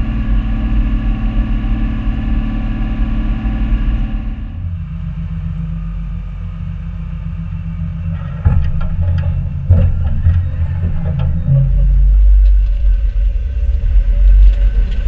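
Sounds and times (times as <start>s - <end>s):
tractor diesel engine running: 0.0s - 15.0s
heavy clunks: 8.1s - 12.9s.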